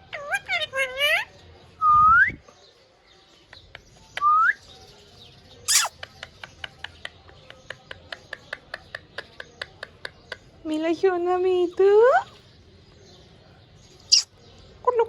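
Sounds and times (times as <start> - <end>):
parrot sharp chirp: 5.6 - 5.9, 14.1 - 14.3.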